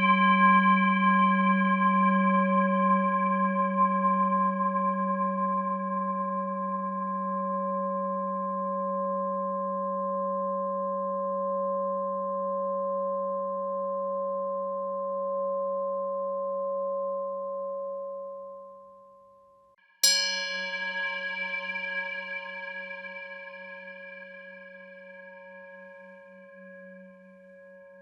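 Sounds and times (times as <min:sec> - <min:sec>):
sustained ringing tone: 0:20.0 - 0:28.0.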